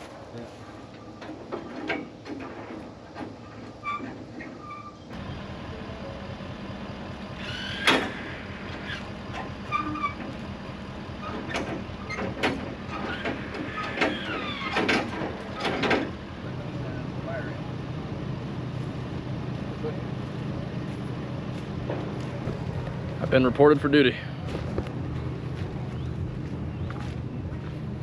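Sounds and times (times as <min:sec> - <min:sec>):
truck engine running: 0:05.1 - 0:28.0
metal clanks of trailer hitch: 0:11.2 - 0:16.2.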